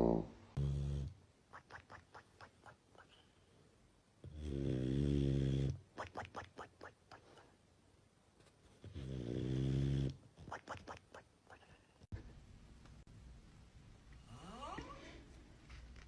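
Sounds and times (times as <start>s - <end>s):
person snoring: 4.2s - 5.8s.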